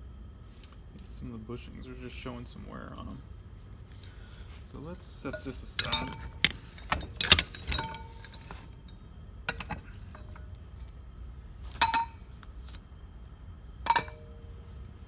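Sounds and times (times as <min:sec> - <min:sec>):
metal parts clinking: 0:05.2 - 0:10.5.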